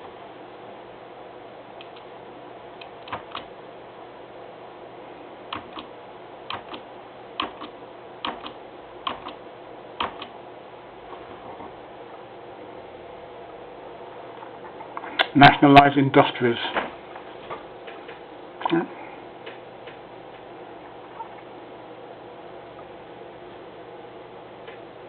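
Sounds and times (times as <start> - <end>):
steady background hiss: 0.0 - 25.0
small sharp clicks in pairs: 7.4 - 9.4.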